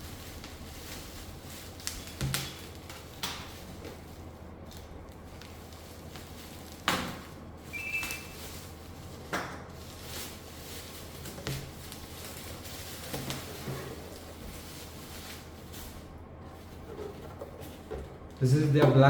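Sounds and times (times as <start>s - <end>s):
packaging rustling: 0.0s - 18.5s
short high squeak: 7.7s - 8.4s.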